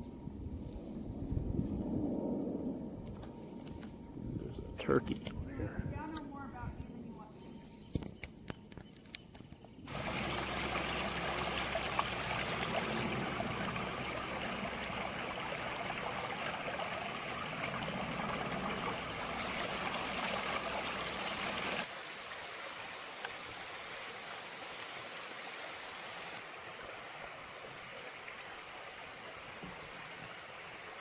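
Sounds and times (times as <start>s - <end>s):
stream water rushing: 9.9s - 31.0s.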